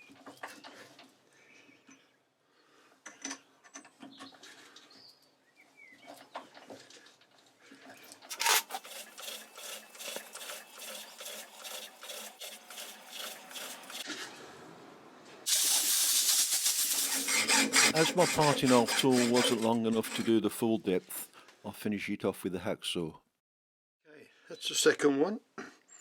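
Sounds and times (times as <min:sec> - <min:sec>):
loud rasping lathe cut: 0:08.3 - 0:14.0, 0:17.0 - 0:20.4
lathe scraping strokes: 0:08.3 - 0:14.1, 0:16.4 - 0:20.5.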